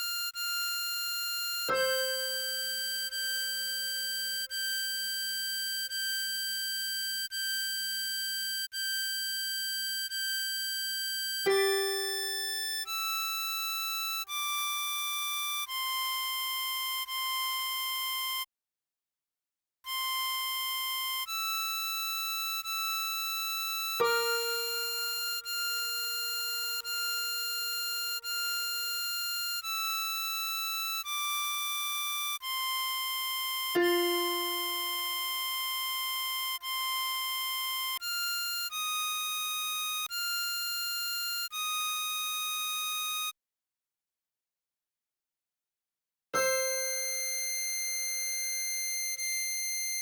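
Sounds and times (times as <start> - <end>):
harmonica slow melody: 0.0 - 18.5, 19.9 - 43.2, 46.4 - 50.0
low harmonica note: 1.6 - 7.5, 10.9 - 14.7, 24.0 - 29.2, 32.4 - 38.8.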